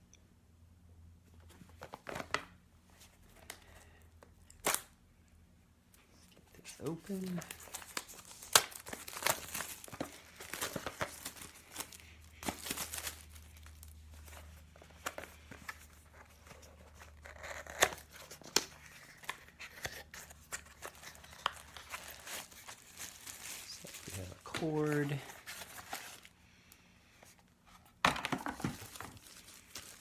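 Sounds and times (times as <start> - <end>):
plastic and paper tearing: 28.7 - 30.0.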